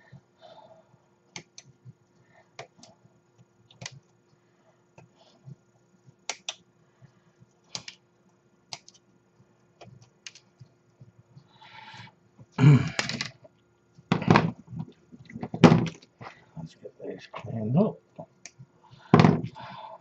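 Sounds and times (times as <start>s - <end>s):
knocking and rustling: 19.1s - 19.6s.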